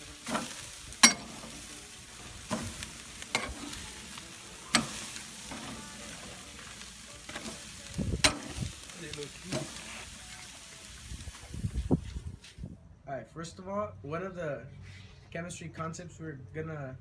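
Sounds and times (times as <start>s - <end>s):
food sizzling on grill: 0.0s - 12.5s.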